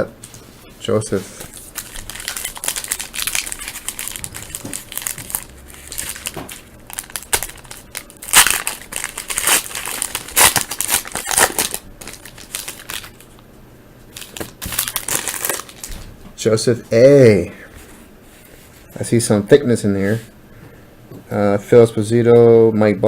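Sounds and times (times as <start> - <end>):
wrapper tearing and crinkling: 1.5 - 13.3, 14.1 - 16.0.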